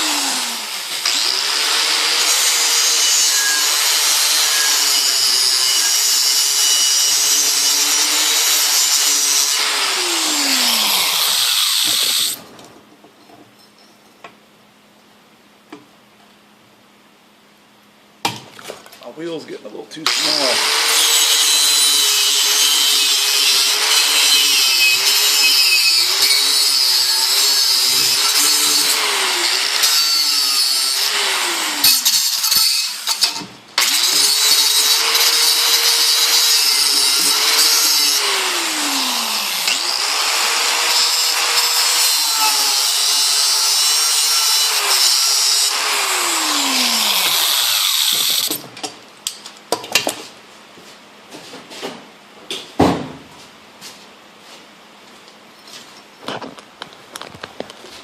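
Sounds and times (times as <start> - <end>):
electric grinder grinding metal: 0.0 - 12.4, 20.0 - 48.6.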